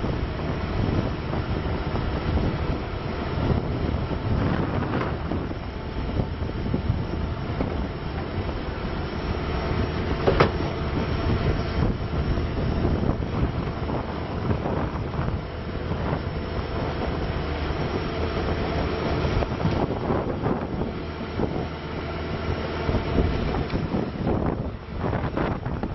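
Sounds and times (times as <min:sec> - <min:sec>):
diesel engine running: 0:00.0 - 0:25.9.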